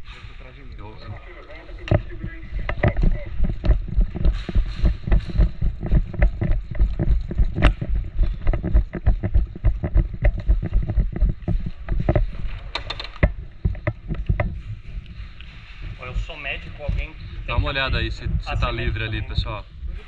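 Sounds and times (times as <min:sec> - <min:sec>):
hurried footsteps thudding: 0:01.9 - 0:12.6
loose gear rattling: 0:02.0 - 0:14.9.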